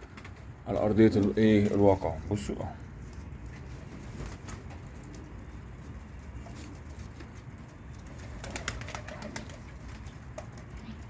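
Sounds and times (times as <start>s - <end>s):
pigeons cooing: 8.1s - 10.0s.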